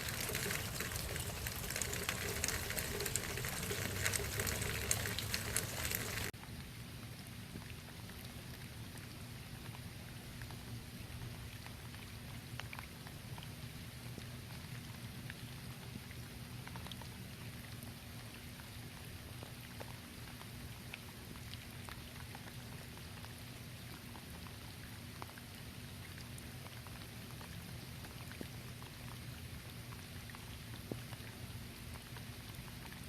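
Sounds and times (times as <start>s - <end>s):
drops ticking: 0.0s - 6.3s
light rain on leaves: 0.0s - 33.0s.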